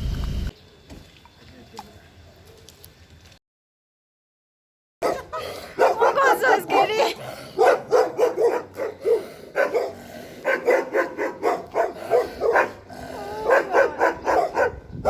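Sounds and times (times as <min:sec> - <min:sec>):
dog barking: 0:05.0 - 0:15.0.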